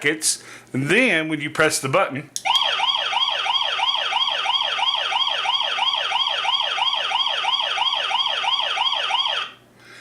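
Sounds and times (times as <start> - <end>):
electronic siren yelp: 2.4 - 9.6.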